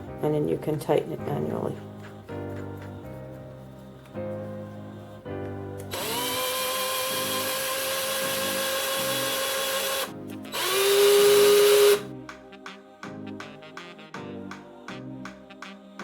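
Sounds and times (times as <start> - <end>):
cordless drill motor whine: 5.9 - 12.0.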